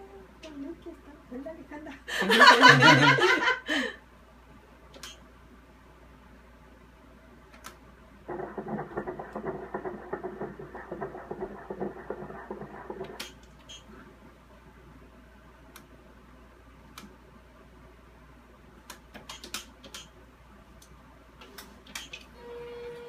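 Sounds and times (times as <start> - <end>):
fetal heartbeat on doppler monitor: 8.3 - 13.4.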